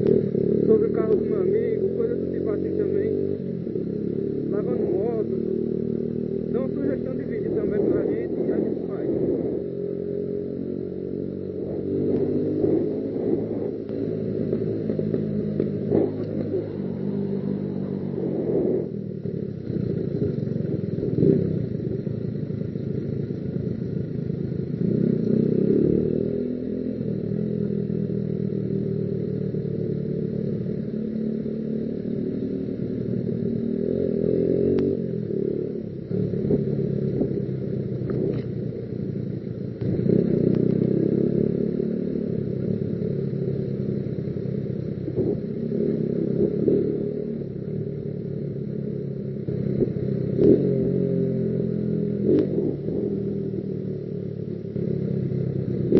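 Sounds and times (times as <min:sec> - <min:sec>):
motorcycle engine running: 0:00.0 - 0:55.9.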